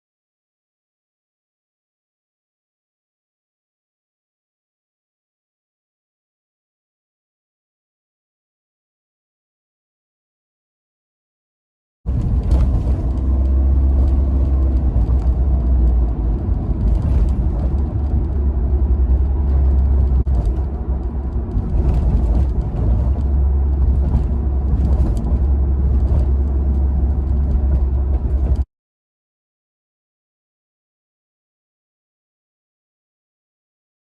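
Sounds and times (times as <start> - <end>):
sliding door rattling and creaking: 12.1 - 28.6
road rumble inside car: 12.1 - 28.7.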